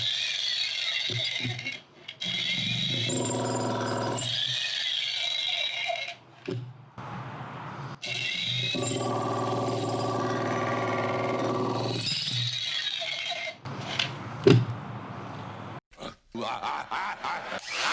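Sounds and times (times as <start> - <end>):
jackhammer hammering concrete: 3.0 - 4.3, 8.8 - 12.0.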